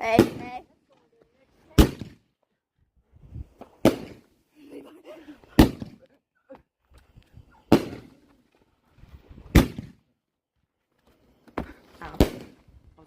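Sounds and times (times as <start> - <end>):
fireworks bangs: 0.0 - 0.7, 1.7 - 2.3, 3.6 - 4.3, 5.4 - 6.1, 7.6 - 8.3, 9.4 - 10.1, 12.0 - 12.6
small firework pops: 1.8 - 2.3, 3.6 - 4.3, 5.6 - 6.1, 7.7 - 8.4.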